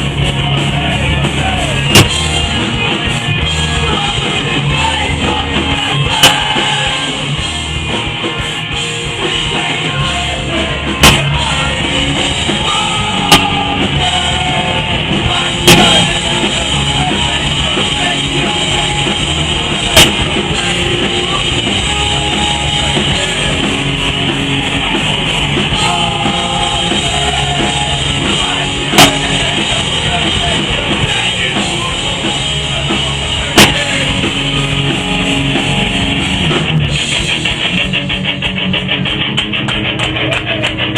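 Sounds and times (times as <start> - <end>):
rock band playing: 0.0 - 40.9
sharp loud hits: 1.9 - 2.3, 11.0 - 11.4, 15.7 - 16.3.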